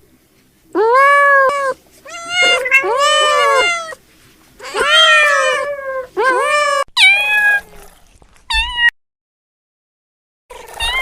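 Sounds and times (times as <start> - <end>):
cat meowing: 0.8 - 4.0, 4.6 - 7.9, 8.5 - 8.9, 10.6 - 11.0.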